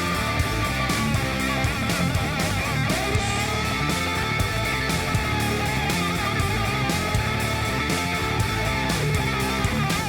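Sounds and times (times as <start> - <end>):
rock music with guitars: 0.0 - 10.0.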